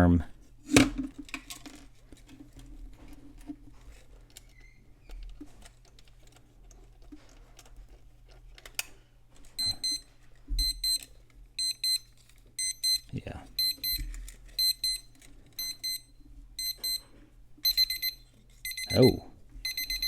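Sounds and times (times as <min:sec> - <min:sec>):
faint clicks and handling noise: 0:01.0 - 0:15.7
electronic alarm beeps: 0:09.6 - 0:17.0, 0:17.6 - 0:20.0.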